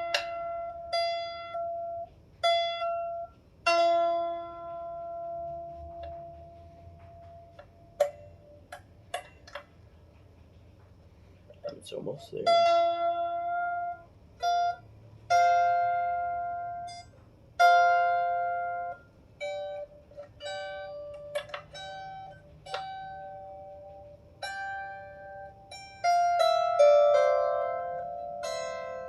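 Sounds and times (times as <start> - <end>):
harp strings plucked: 0.0 - 9.7.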